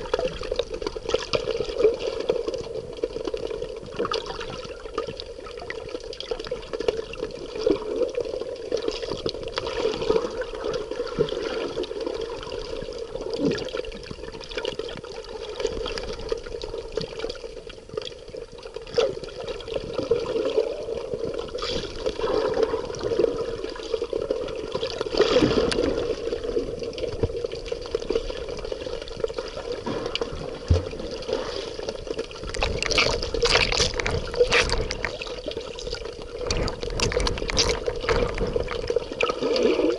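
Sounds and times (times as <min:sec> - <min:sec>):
water running and splashing: 0:19.2 - 0:39.9.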